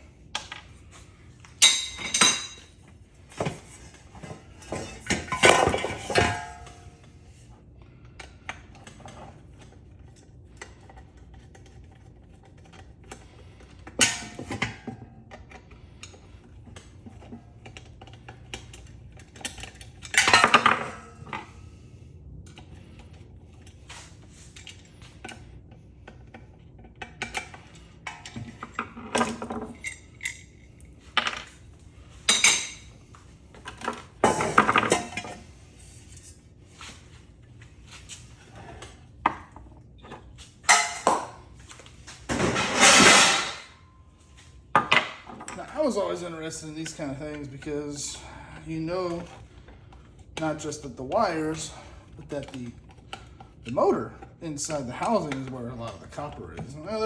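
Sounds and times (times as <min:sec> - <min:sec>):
metal parts clinking and clattering: 0:42.3 - 0:43.7.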